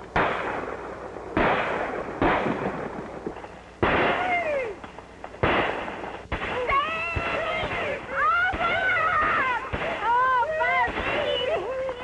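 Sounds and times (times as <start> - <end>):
gunshots with echo: 0.1 - 3.0, 3.8 - 4.4, 5.4 - 6.6.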